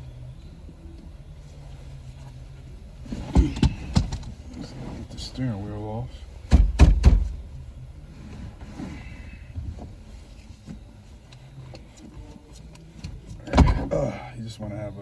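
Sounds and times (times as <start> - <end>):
heavy thumps: 2.7 - 5.5, 6.1 - 7.8.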